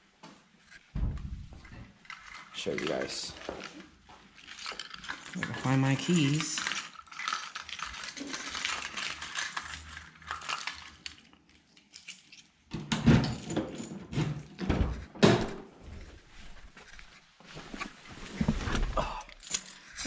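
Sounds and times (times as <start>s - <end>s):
knocks and thumps: 1.0s - 1.9s
small metal objects clinking: 2.0s - 13.9s, 19.2s - 20.0s
keys jingling: 2.0s - 14.6s, 19.2s - 20.0s.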